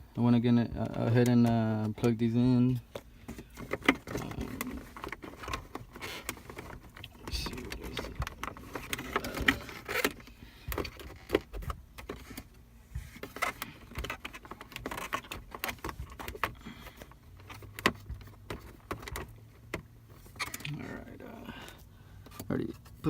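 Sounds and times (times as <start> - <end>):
plastic rustling: 3.3 - 19.3.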